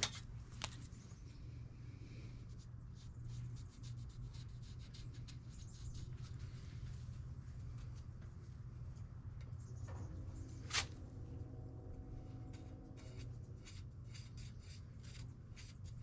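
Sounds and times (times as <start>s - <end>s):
steady low hum: 0.0s - 16.0s
marker scratching on metal pipe: 2.5s - 6.3s, 12.4s - 16.0s.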